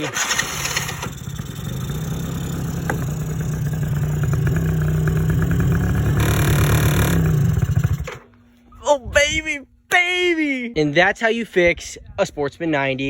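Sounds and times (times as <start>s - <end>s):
starting fluid spraying: 0.0s - 3.3s
small engine running: 0.0s - 8.2s
starter motor cranking: 0.0s - 8.3s.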